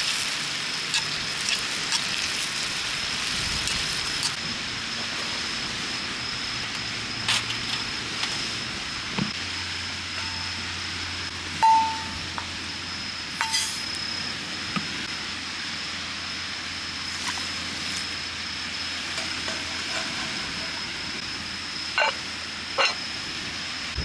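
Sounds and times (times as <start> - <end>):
food sizzling in a hot pan: 0.0 - 4.4
cooking utensil scraping and clinking: 19.1 - 21.2, 22.8 - 23.0.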